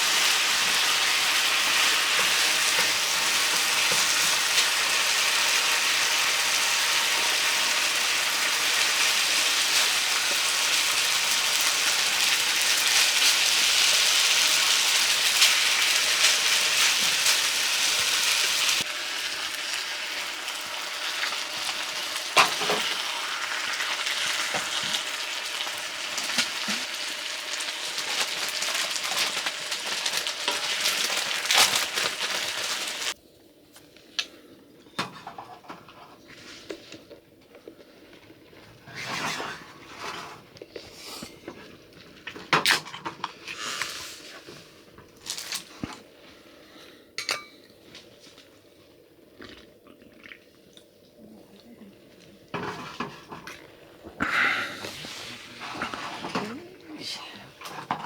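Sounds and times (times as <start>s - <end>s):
dishes and utensils clinking: 47.2s - 47.7s.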